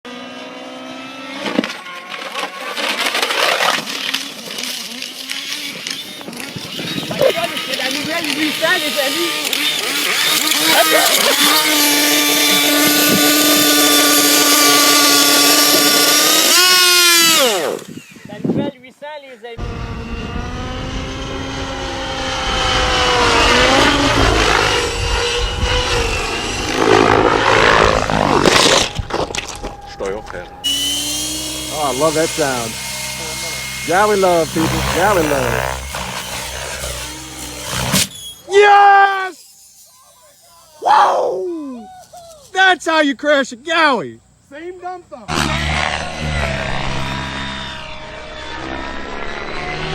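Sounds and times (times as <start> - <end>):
toy helicopter motor whining: 1.1 - 18.6, 19.6 - 42.6, 45.3 - 49.9
sharp crack: 45.3 - 47.4.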